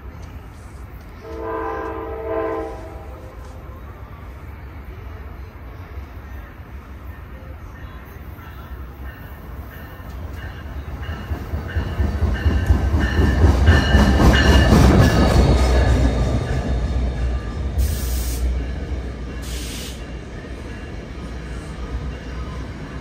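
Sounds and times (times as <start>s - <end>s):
diesel train engine and rail rumble: 0.0s - 23.0s
short air hisses: 17.8s - 18.5s, 19.4s - 20.0s.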